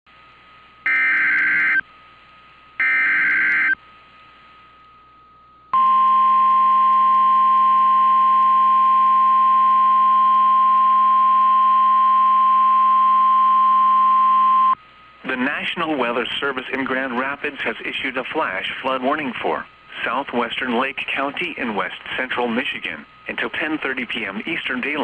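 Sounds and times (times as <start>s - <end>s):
steady alarm tone: 0.8s - 1.8s, 2.8s - 3.8s.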